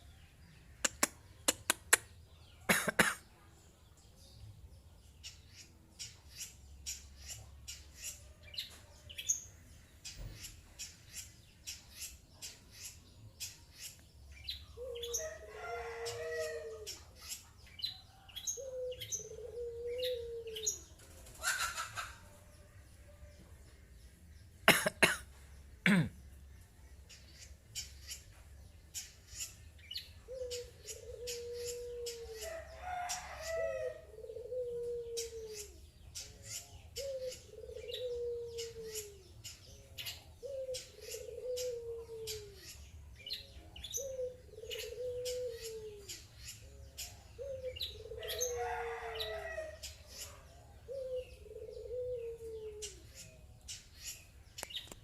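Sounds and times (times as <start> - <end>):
sharp clicks: 0.9 - 2.1.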